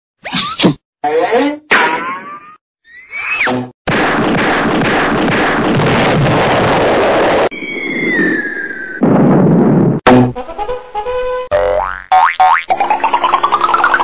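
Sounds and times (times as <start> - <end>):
falling whistle: 7.5 - 9.0
rising whistle: 7.5 - 9.0.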